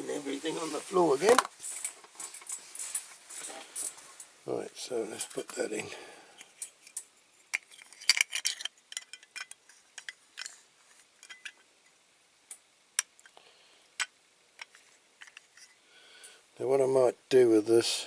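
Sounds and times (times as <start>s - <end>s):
plastic and metal parts clicking: 6.4s - 10.6s.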